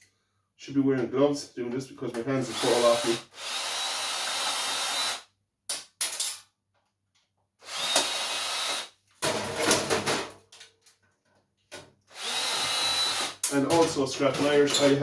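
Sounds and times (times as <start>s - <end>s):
cordless drill running: 2.4s - 5.2s, 7.6s - 9.0s, 12.1s - 13.4s.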